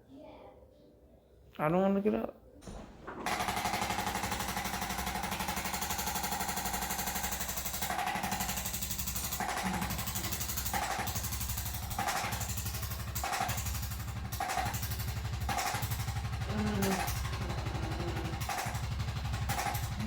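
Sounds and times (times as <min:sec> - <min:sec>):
massage gun rattling: 0:02.6 - 0:20.0.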